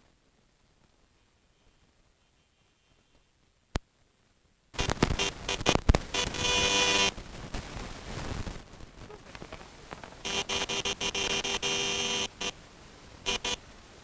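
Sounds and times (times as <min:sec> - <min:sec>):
electronic bike horn honking: 0:05.2 - 0:07.1, 0:10.2 - 0:12.6, 0:13.2 - 0:13.6.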